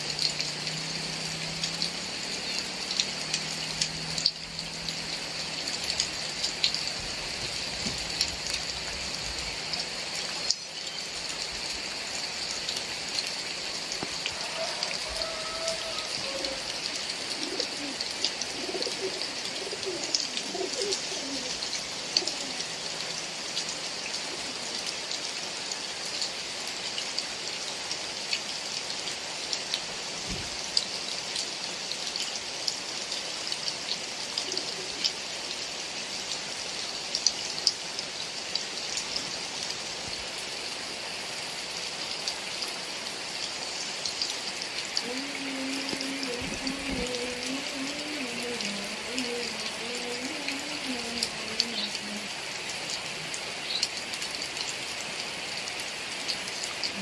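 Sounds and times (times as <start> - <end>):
heavy rain falling: 0.0 - 57.0
bird cooing: 14.3 - 22.9, 34.4 - 35.2, 45.0 - 52.3.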